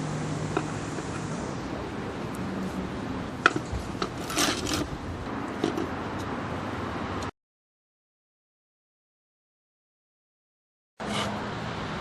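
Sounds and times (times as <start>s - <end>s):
short scraping: 4.1s - 5.0s.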